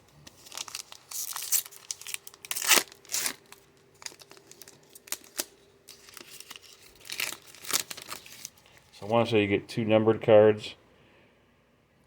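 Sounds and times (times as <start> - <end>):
plastic wrapper crinkling and tearing: 0.2 - 9.2.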